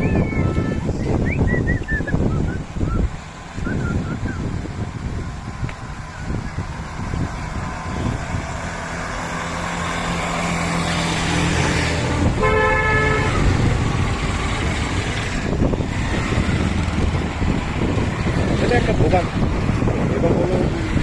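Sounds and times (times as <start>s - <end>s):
road traffic engines: 0.0s - 21.0s
car horn honk: 12.2s - 13.7s.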